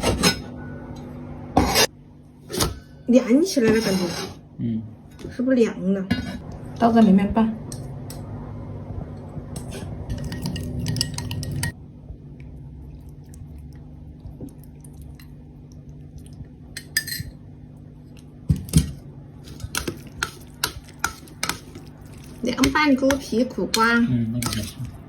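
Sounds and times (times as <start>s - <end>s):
utensils clinking against a bowl: 9.6s - 11.8s, 16.8s - 17.4s, 18.6s - 25.0s.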